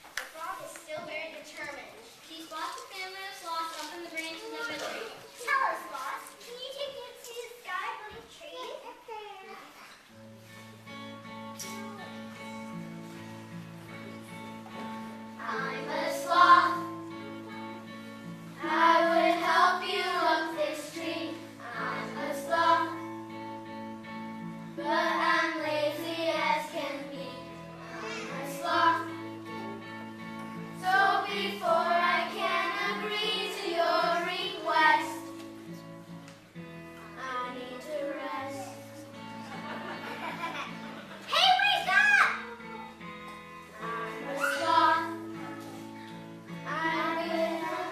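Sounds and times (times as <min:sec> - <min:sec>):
children singing: 0:15.4 - 0:17.1, 0:18.6 - 0:23.1, 0:24.8 - 0:29.6, 0:30.8 - 0:35.3, 0:43.8 - 0:45.9, 0:46.6 - 0:47.9.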